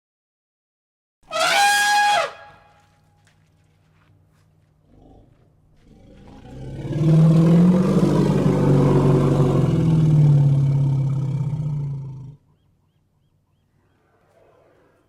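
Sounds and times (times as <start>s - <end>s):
elephant low growling call: 4.9s - 12.7s, 13.7s - 15.0s.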